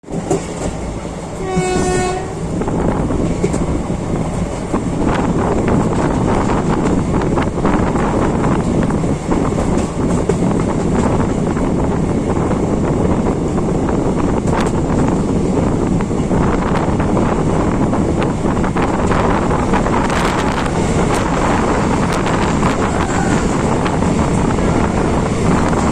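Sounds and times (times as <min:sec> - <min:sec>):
train rumbling at speed: 0:00.0 - 0:25.9
train horn blast: 0:01.4 - 0:02.6.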